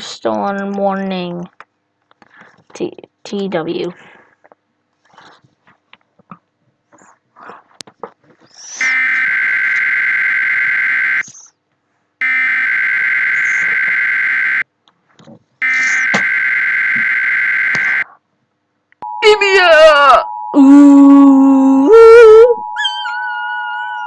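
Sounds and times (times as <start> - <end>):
high-pitched digital data tones: 8.6 - 11.5, 12.2 - 14.6, 15.6 - 18.1.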